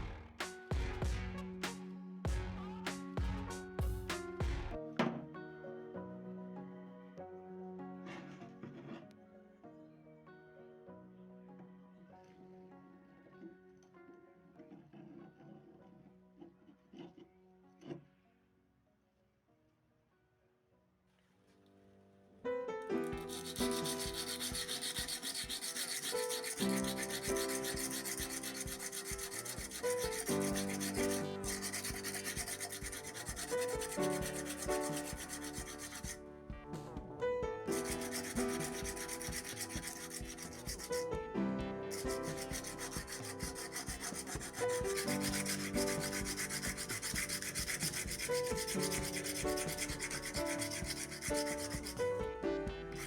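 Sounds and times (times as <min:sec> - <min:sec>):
background music: 0:00.0 - 0:18.5, 0:22.2 - 0:53.0
abrasive sanding on iron: 0:23.1 - 0:36.2, 0:37.7 - 0:41.2, 0:41.9 - 0:52.2.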